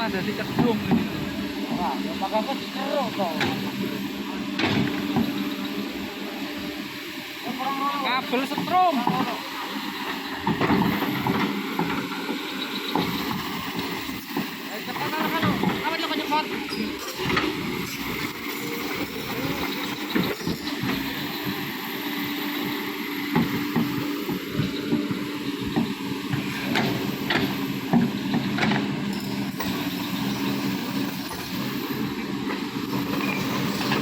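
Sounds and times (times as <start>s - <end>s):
diesel engine running: 0.0s - 34.0s
sharp knocks and clanks: 0.5s - 1.2s, 4.6s - 5.4s, 10.4s - 18.1s, 23.3s - 29.8s.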